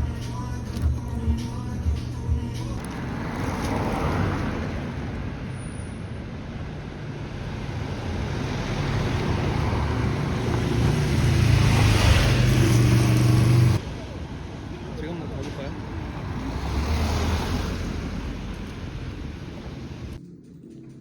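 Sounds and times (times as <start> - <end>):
vehicle engine running: 0.0 - 3.8
road traffic noise: 0.0 - 21.0.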